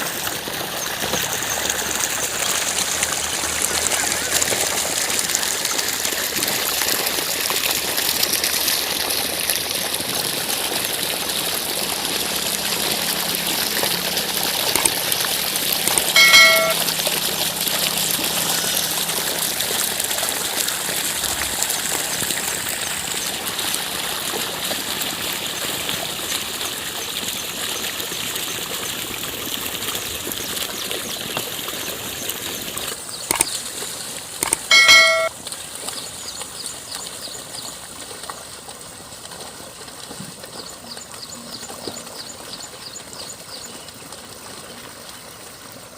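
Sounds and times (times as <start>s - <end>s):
water rushing and trickling: 0.0s - 45.9s
short high-pitched tone: 15.9s - 16.9s, 34.5s - 35.3s.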